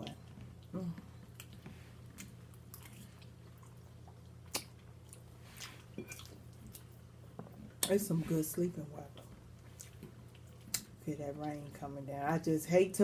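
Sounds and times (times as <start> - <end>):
woman chewing food: 0.0 - 7.9, 9.1 - 11.6
faint low hum: 0.0 - 13.0.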